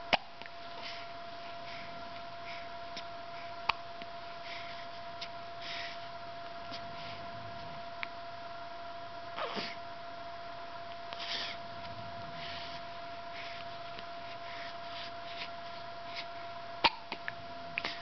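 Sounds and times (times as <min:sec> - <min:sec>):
faint steady hum: 0:00.0 - 0:18.0
soft breathing: 0:00.6 - 0:08.0, 0:11.0 - 0:18.0
person hiccuping: 0:09.4 - 0:09.8, 0:16.8 - 0:17.2.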